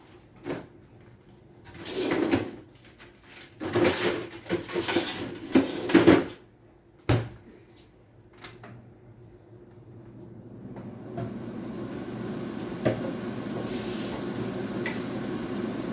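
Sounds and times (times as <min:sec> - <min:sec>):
things clattering and scraping: 0:01.6 - 0:06.4.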